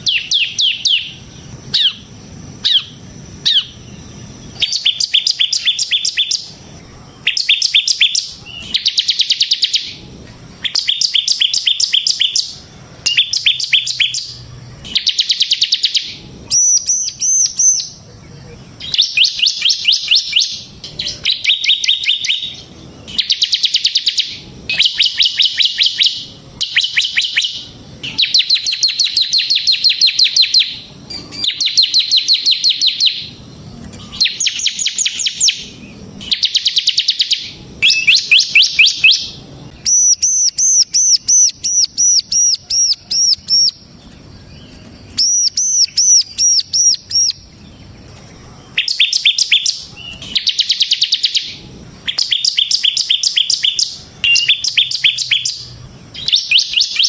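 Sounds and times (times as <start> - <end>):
bird rattling trill: 34.1 - 47.4, 48.7 - 57.0.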